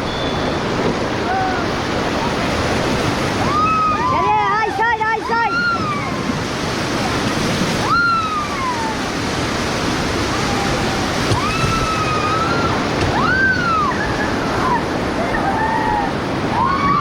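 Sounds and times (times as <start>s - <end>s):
whitewater rapids rushing: 0.0s - 17.0s
people yelling: 3.4s - 6.4s, 7.8s - 9.0s, 10.2s - 17.0s.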